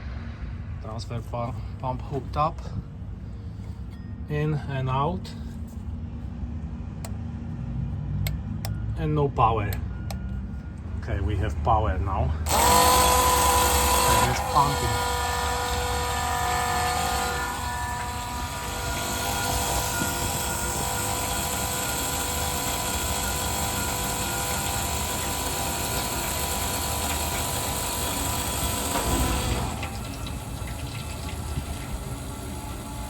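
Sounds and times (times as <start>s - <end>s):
electric fuel pump running: 12.3s - 33.0s.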